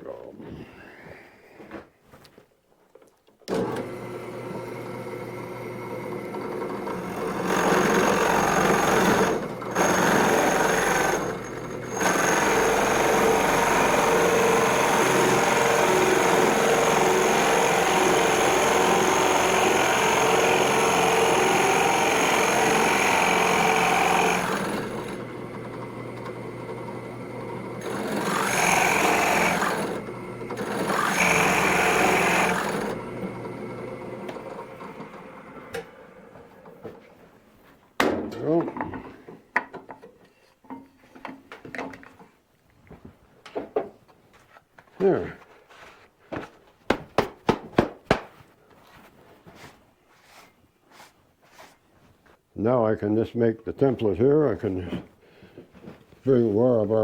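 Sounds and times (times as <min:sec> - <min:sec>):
electric drill boring into wood: 0:03.5 - 0:35.3.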